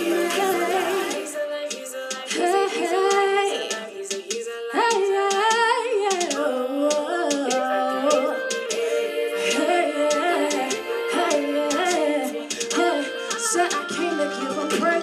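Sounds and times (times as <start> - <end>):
musical accompaniment: 0.0 - 2.4, 7.5 - 15.0
person singing gospel: 0.0 - 15.0
light percussive ticks: 1.7 - 2.4, 3.1 - 8.8, 11.7 - 13.8.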